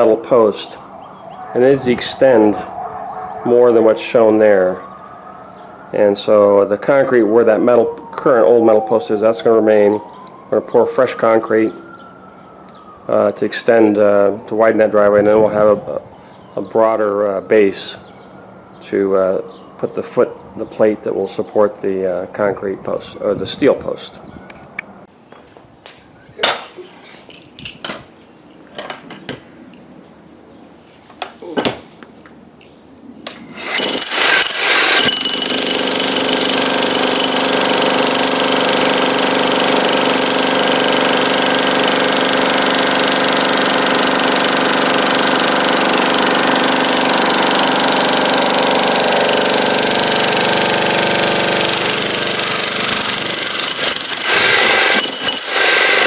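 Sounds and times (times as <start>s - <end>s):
jackhammer breaking concrete: 33.6s - 56.0s.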